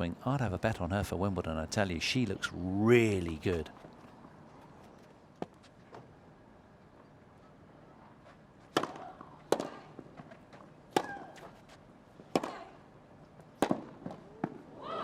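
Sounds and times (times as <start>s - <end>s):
tennis ball struck by racket: 8.7s - 9.8s, 10.9s - 11.6s, 12.3s - 12.7s, 13.6s - 14.6s
tennis ball bouncing: 8.7s - 11.7s, 12.3s - 12.7s, 13.5s - 14.6s.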